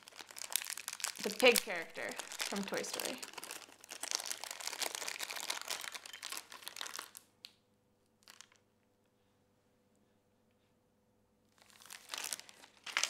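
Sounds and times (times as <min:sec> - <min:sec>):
packaging crinkling: 0:00.0 - 0:07.6, 0:08.2 - 0:08.6, 0:11.6 - 0:13.0.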